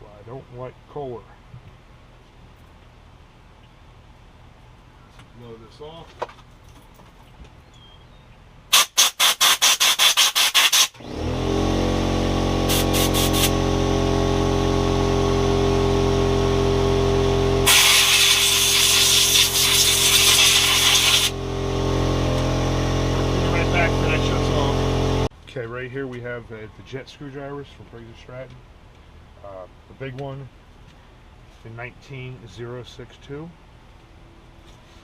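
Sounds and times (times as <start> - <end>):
air blow gun blasts: 8.7 - 11.0, 12.6 - 13.6, 17.6 - 21.4
air compressor motor running: 8.7 - 25.3.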